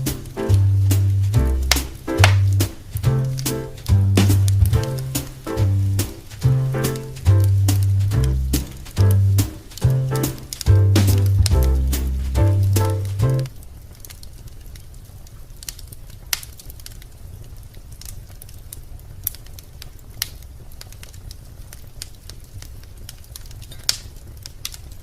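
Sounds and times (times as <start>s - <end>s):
music track: 0.0s - 13.5s
wood fire crackling: 0.0s - 25.0s.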